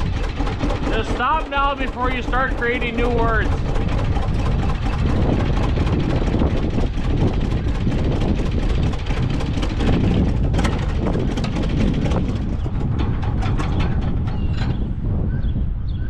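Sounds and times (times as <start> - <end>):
vehicle engine running: 0.0 - 15.8.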